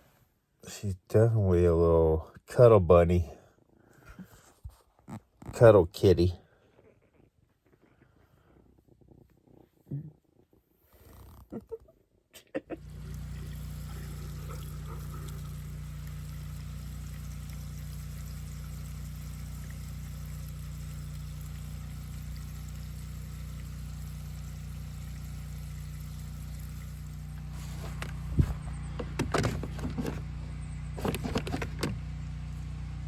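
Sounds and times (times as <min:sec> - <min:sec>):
generator engine humming: 0:12.8 - 0:33.0.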